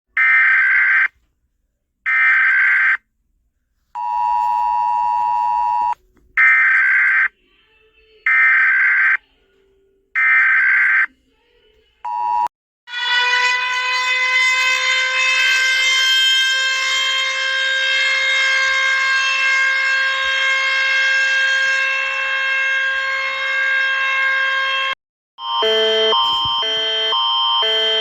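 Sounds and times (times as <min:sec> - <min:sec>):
steady siren tone: 0:12.9 - 0:28.0
two-tone attention signal: 0:25.4 - 0:28.0.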